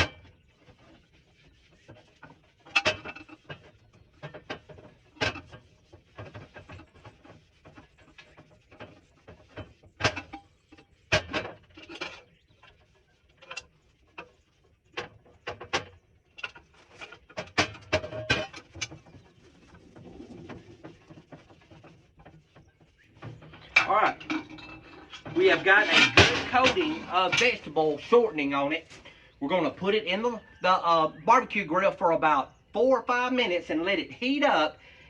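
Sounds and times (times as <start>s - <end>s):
knocks and clinks of iron kettle: 17.4s - 19.0s.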